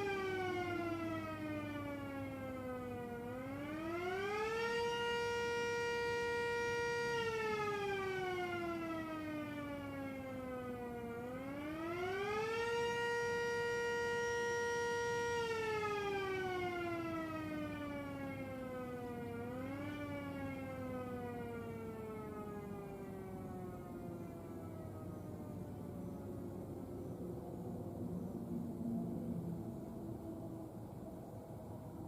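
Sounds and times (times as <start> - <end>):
distant siren wailing: 0.0 - 32.0.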